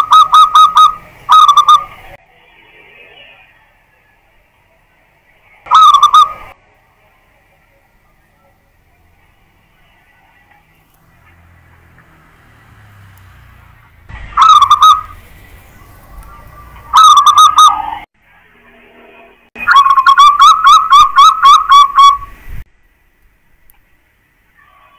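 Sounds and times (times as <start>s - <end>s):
dove cooing: 0.0s - 1.9s, 5.7s - 6.5s, 14.3s - 15.2s, 16.4s - 17.8s.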